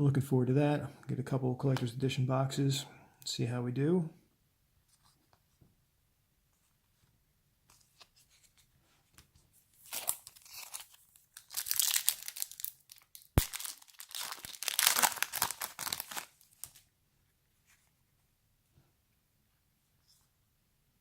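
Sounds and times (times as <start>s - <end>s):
card wrapper tearing and crinkling: 9.8s - 16.8s.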